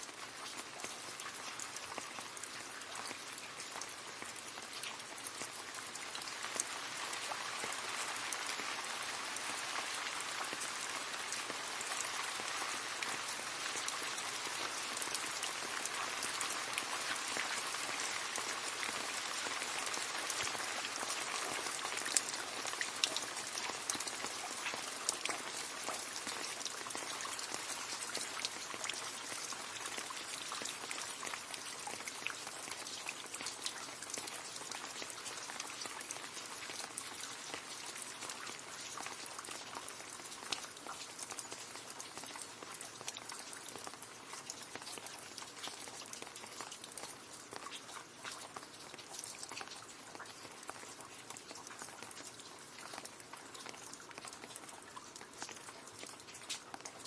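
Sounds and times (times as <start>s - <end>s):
rain splashing into a puddle: 0.0s - 57.0s.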